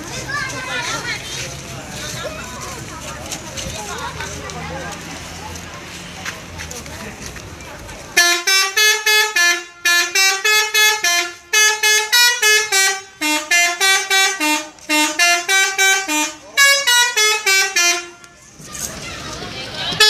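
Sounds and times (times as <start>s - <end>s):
horn playing fast melody: 8.2s - 18.3s.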